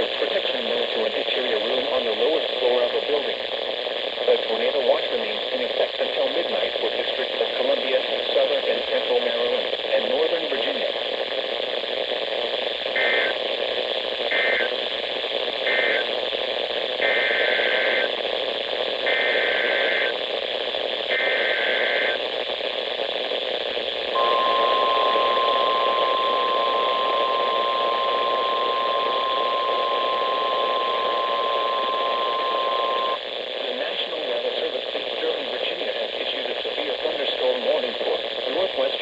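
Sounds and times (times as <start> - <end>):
static hiss: 0.0 - 39.0
warbling data bursts: 13.0 - 13.3
steady warning alarm tone: 13.0 - 13.4, 14.3 - 14.8, 15.7 - 16.1, 17.0 - 18.1, 19.1 - 20.2, 21.1 - 22.2, 24.2 - 33.2.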